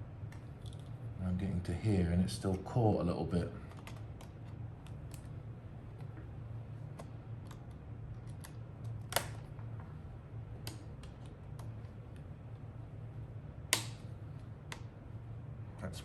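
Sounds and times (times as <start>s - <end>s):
plastic clips clicking: 7.0s - 9.5s, 13.7s - 14.0s
sharp plastic click: 13.7s - 14.1s.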